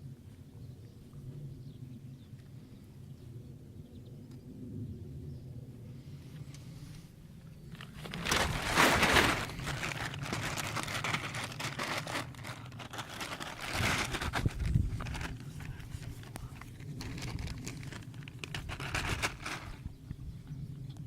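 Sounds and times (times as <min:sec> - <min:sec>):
crinkling and rustling: 0:07.7 - 0:19.9.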